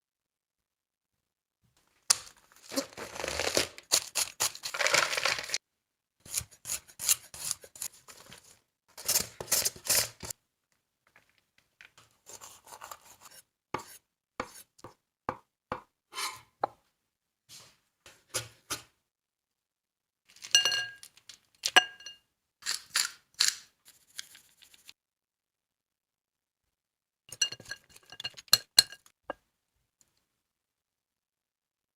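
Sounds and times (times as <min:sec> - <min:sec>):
knife chopping crunchy vegetables: 0:02.1 - 0:05.6.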